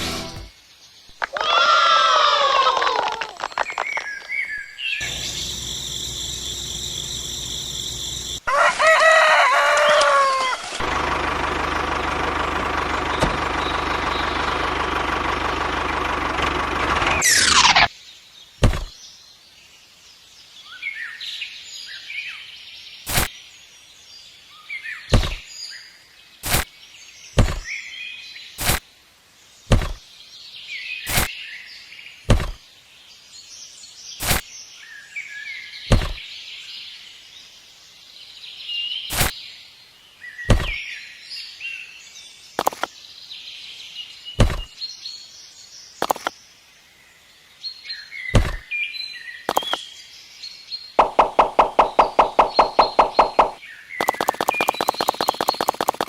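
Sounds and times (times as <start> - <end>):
birds chirping: 0.0 - 19.5, 34.2 - 56.0
sharp knocks: 51.0 - 53.6.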